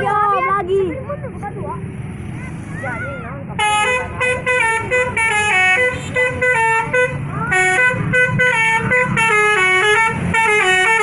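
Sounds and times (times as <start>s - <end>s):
multi-tone musical air horn: 3.6s - 11.0s.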